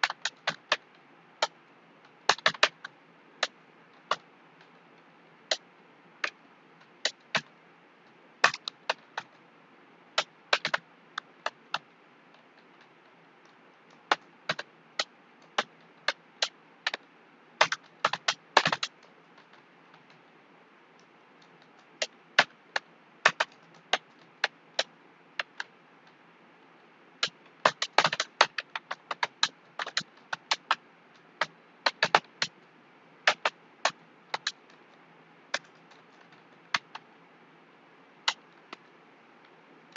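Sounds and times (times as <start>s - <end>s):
computer keyboard typing: 2.3s - 3.5s, 10.2s - 10.8s, 17.6s - 20.2s, 21.4s - 25.7s, 27.2s - 30.8s, 31.4s - 32.5s, 35.5s - 37.0s.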